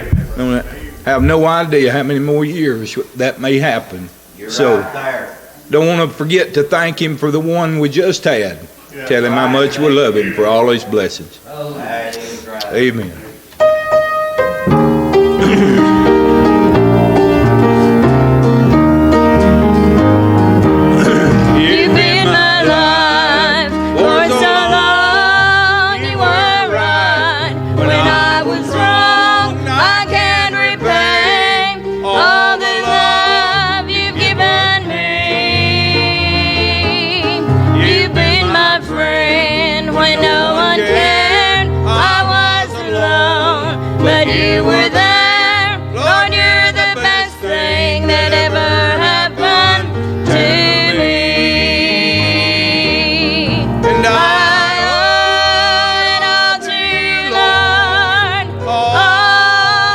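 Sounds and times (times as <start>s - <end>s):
person singing gospel song: 0.0s - 4.9s, 14.7s - 59.9s
instrumental accompaniment with bass: 13.6s - 59.9s.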